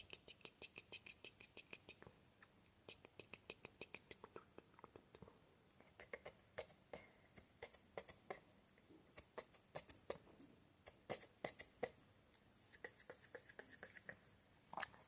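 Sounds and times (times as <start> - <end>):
lip smacks: 0.0 - 10.2
tongue clicks: 0.0 - 14.1.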